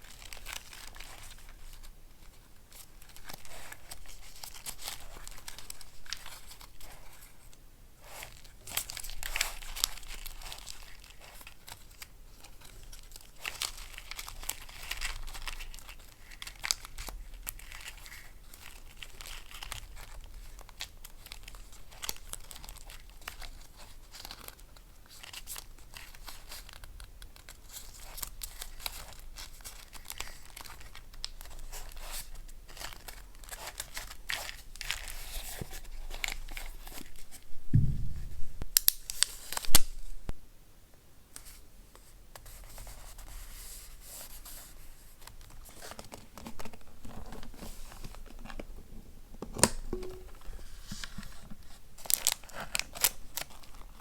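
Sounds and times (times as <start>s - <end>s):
paper crinkling and tearing: 0.0s - 1.9s, 2.7s - 7.2s, 8.0s - 37.4s, 38.8s - 40.0s, 50.6s - 54.0s
low thud: 37.6s - 38.8s.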